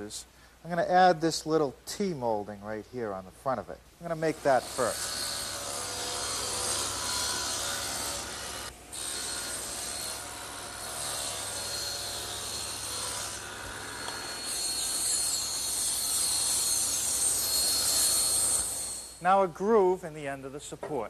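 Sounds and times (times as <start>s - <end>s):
power tool cutting wood: 4.3s - 19.2s.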